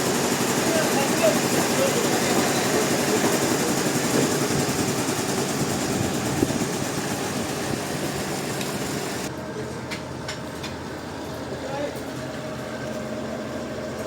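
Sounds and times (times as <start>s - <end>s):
sawmill machinery engine running: 0.0s - 14.0s.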